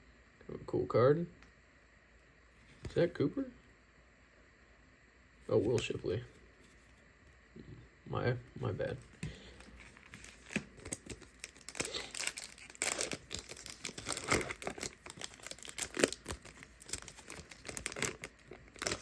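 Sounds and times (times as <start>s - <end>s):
plastic wrappers tearing and crinkling: 9.6s - 19.0s.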